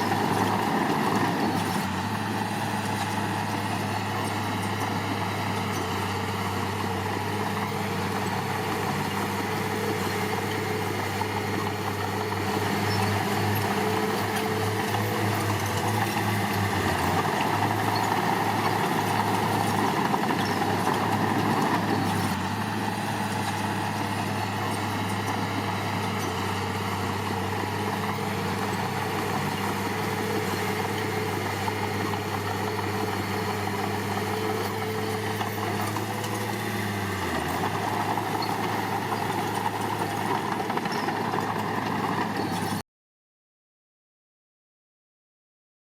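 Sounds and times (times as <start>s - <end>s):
heavy machine diesel engine running: 0.0s - 42.8s.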